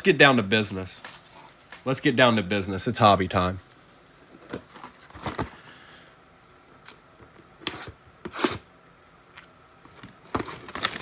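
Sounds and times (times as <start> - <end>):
packaging rustling: 10.0 - 11.0.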